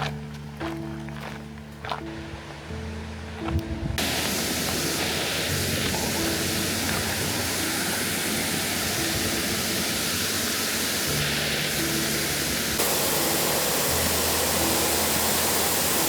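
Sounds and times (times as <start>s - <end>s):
faint background music: 0.0s - 16.0s
waterfall roaring: 4.0s - 16.0s.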